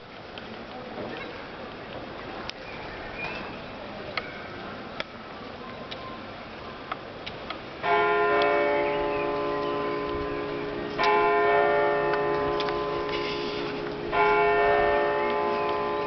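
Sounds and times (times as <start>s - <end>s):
large church bell ringing: 7.8s - 16.0s.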